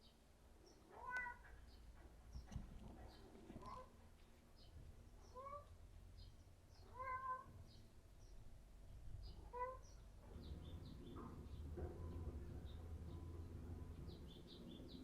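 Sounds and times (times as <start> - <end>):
cat meowing: 0.9 - 1.4, 6.8 - 7.5, 9.5 - 9.8.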